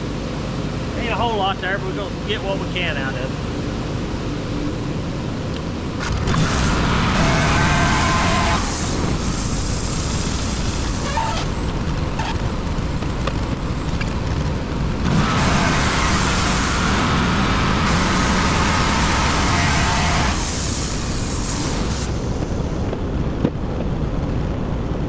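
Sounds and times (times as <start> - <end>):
band sawmill sawing: 6.0 - 11.6, 15.0 - 22.2
high saw whine: 6.0 - 11.6, 15.0 - 22.4.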